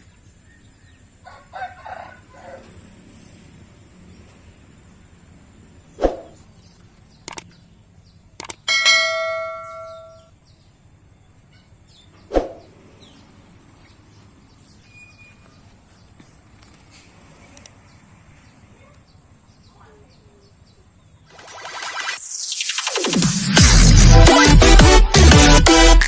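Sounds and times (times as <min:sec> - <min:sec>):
ringing metallic clang: 0:08.7 - 0:10.3.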